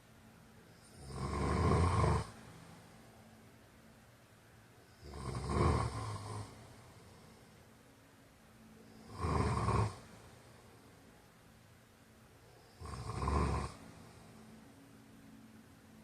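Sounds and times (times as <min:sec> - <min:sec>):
man snoring: 0:00.8 - 0:02.4, 0:05.0 - 0:06.6, 0:09.0 - 0:10.1, 0:12.7 - 0:14.2.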